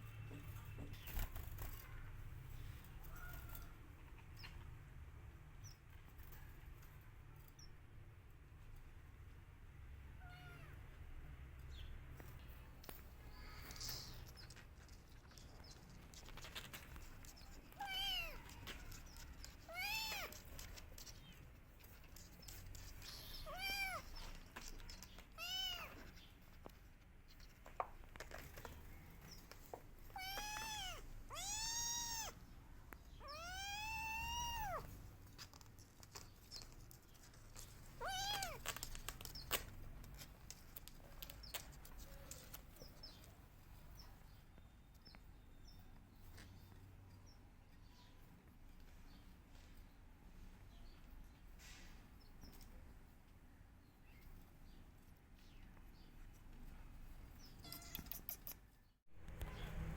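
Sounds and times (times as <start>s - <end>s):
kitten meowing: 10.2s - 10.7s, 17.4s - 20.4s, 23.1s - 24.3s, 25.3s - 26.0s, 30.1s - 32.4s, 33.2s - 35.0s, 38.0s - 38.7s, 57.6s - 58.6s.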